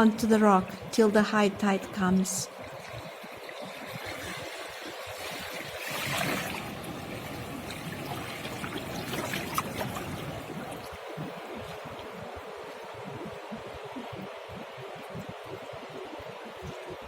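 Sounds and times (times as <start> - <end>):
seawater washing among rocks: 2.6 - 12.2.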